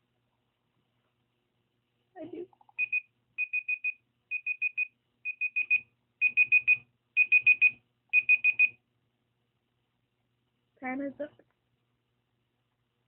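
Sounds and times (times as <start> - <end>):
timer alarm beeping: 2.8 - 8.8.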